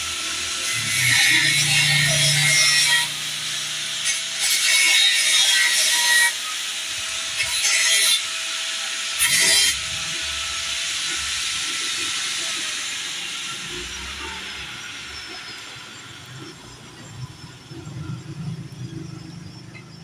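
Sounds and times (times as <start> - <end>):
hand tool scraping metal: 0.2 - 6.7, 9.2 - 9.9.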